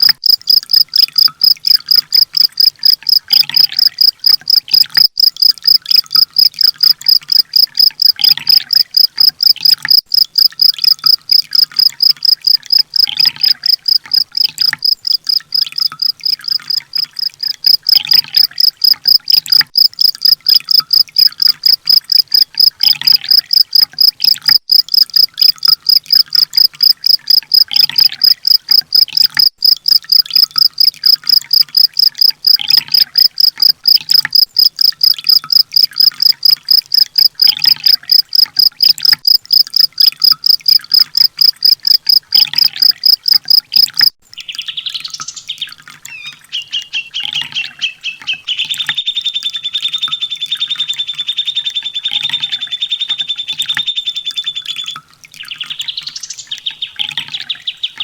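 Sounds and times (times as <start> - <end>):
bird high chirps: 44.4 - 58.0.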